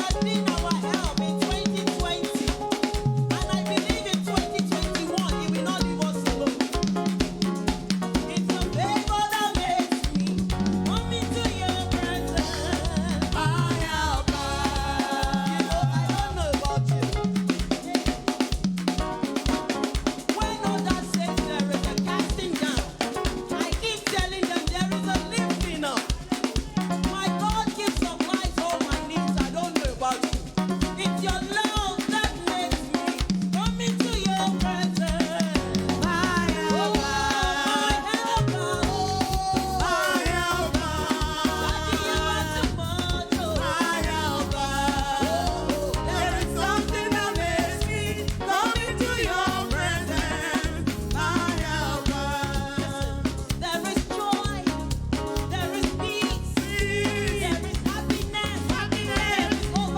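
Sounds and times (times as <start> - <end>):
drum kit beat: 0.0 - 59.9
praise and worship music: 0.0 - 59.9
voices singing: 8.2 - 18.5, 34.7 - 53.8, 55.9 - 59.9
bass line: 10.4 - 17.3, 35.6 - 37.4, 38.4 - 53.7, 54.7 - 59.9.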